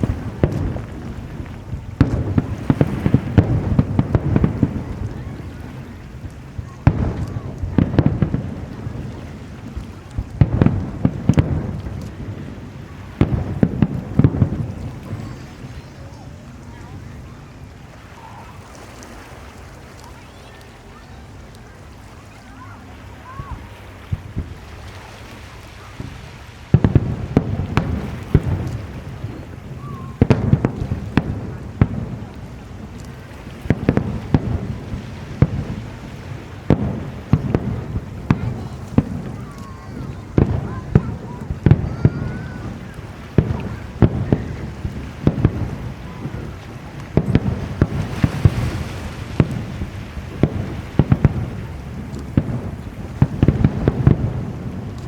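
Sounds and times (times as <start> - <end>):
fireworks bangs: 0.0 - 55.0
low rumbling echo: 26.0 - 55.0.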